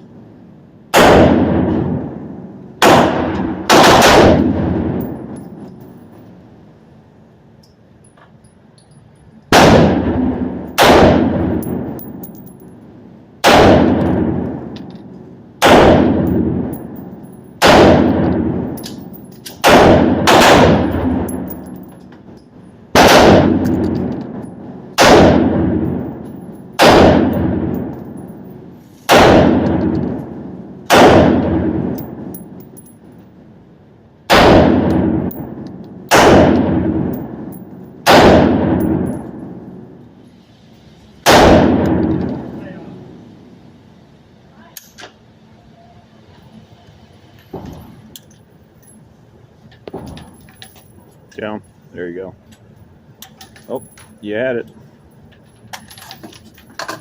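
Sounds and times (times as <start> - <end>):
rifle shots echoing: 0.9 - 5.4, 9.5 - 12.4, 13.4 - 14.8, 15.6 - 21.9, 22.9 - 32.7, 34.3 - 40.0, 41.2 - 42.6.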